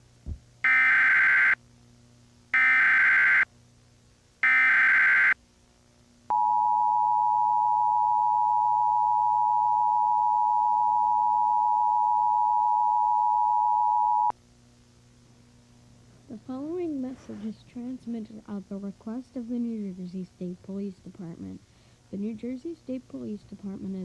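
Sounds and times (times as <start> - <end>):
buzzing data bursts: 0.6 - 1.6, 2.6 - 3.4, 4.4 - 5.4
two-tone attention signal: 6.3 - 14.3.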